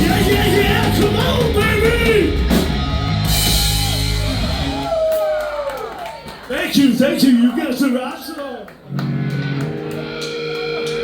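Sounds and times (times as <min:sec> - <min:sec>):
live hard rock band: 0:00.0 - 0:05.2, 0:09.0 - 0:11.0
gliding electric guitar notes: 0:08.9 - 0:11.0.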